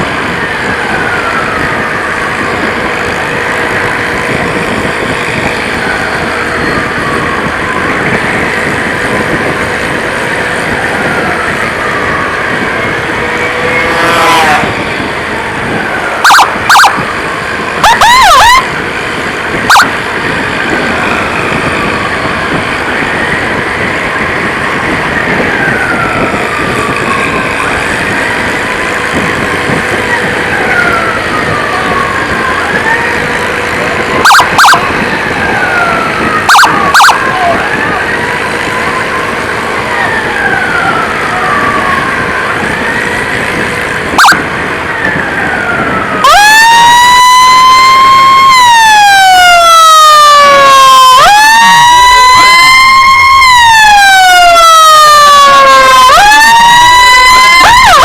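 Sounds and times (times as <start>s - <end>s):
ambulance siren: 0.0s - 58.0s
loud horn blasts: 13.2s - 15.0s.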